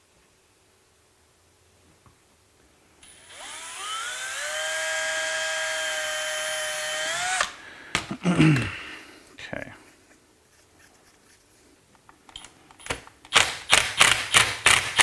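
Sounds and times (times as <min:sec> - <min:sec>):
power drill whining: 0:03.0 - 0:07.6.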